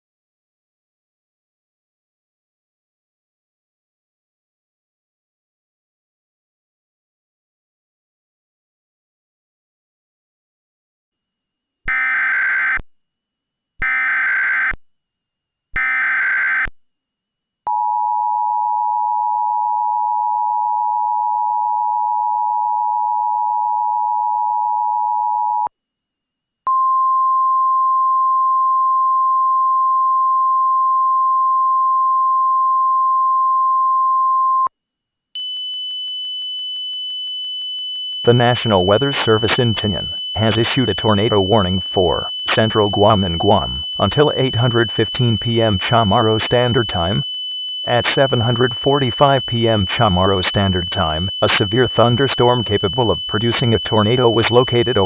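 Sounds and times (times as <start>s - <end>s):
steady alarm tone: 11.9s - 12.8s, 13.8s - 14.8s, 15.8s - 16.7s, 35.4s - 55.0s
two-tone attention signal: 38.2s - 55.0s
higher-pitched electronic tone: 38.3s - 47.2s
screeching data bursts: 47.8s - 55.0s.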